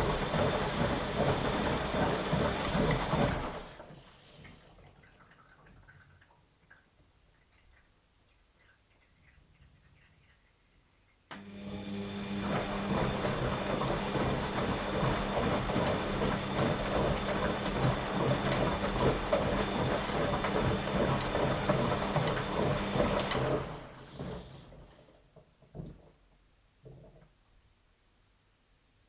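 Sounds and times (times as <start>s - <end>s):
washing machine drum tumbling: 0.0s - 3.8s, 12.3s - 24.5s.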